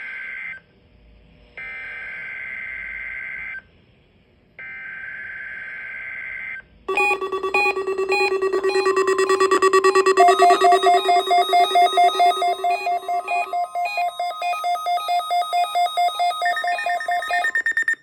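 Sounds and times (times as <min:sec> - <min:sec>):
pulsing electronic alert tone: 0:06.9 - 0:18.0
warbling two-pitch data tones: 0:06.9 - 0:18.0.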